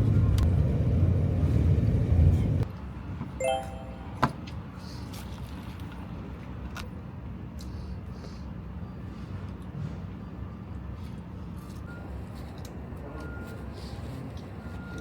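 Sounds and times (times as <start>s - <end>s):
road rumble inside moving car: 0.0s - 3.3s
short chime: 3.4s - 4.3s.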